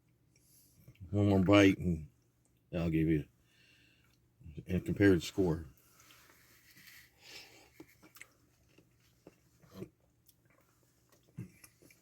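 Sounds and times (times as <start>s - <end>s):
person chewing food: 7.0s - 12.0s.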